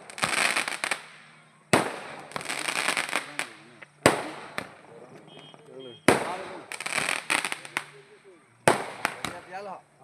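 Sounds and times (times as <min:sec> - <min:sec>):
loud firecracker bangs: 0:00.0 - 0:04.8, 0:06.0 - 0:08.0, 0:08.6 - 0:09.7
firecrackers cracking: 0:00.0 - 0:09.8.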